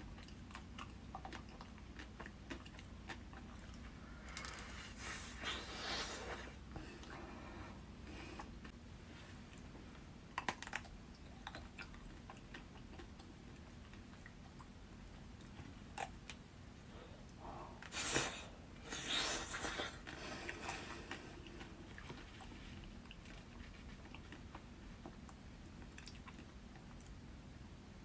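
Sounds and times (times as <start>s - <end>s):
biting and chewing: 0.0s - 4.9s, 10.3s - 16.4s, 17.8s - 27.2s.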